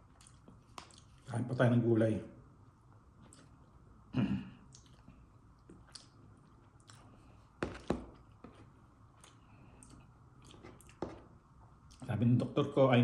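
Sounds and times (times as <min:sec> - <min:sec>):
person chewing food: 0:00.0 - 0:01.3, 0:03.1 - 0:03.8, 0:04.6 - 0:12.1
wet mouth clicks: 0:04.6 - 0:06.2.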